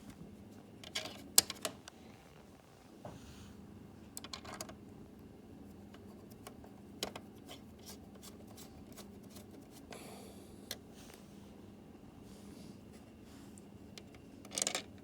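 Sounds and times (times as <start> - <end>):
steady low hum: 0.0 - 14.5
small parts clicking and tapping: 4.1 - 4.8, 14.0 - 15.0.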